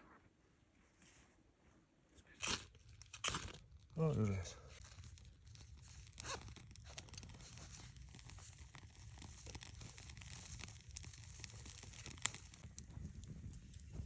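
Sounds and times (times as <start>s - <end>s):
faint crackling and rustling: 0.0s - 14.0s
sharp crack: 2.4s - 4.4s.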